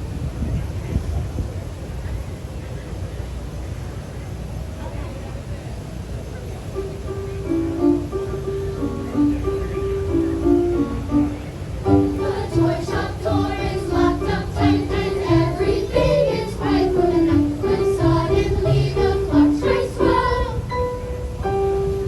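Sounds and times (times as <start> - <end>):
instrumental accompaniment: 6.8 - 22.0
children's choir singing: 11.8 - 21.1.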